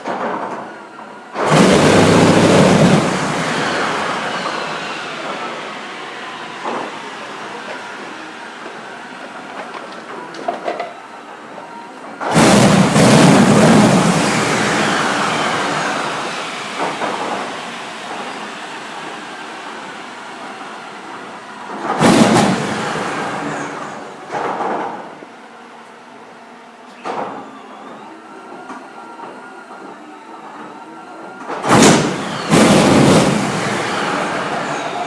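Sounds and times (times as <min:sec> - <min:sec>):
radial aircraft engine bursts: 0:01.4 - 0:10.3, 0:12.3 - 0:24.3, 0:31.7 - 0:35.0.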